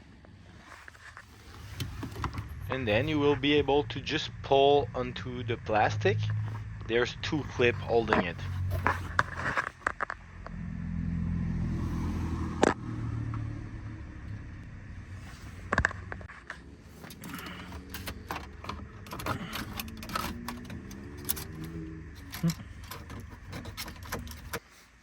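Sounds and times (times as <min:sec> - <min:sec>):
low steady hum: 0:01.2 - 0:24.6
plastic trim clicking and knocking: 0:17.0 - 0:24.6.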